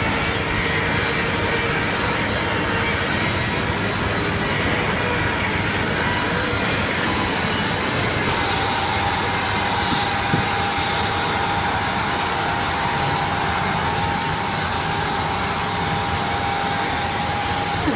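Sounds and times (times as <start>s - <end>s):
steady whine: 0.0s - 17.9s
power sander running: 7.7s - 17.9s.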